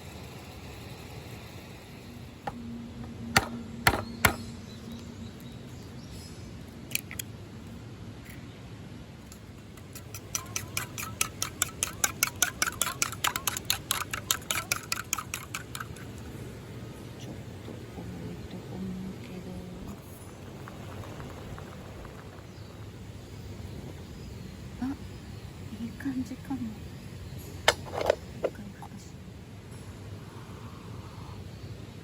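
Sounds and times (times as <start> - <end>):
sharp knocks: 3.3 - 4.5
fast clicking taps: 9.9 - 16.2.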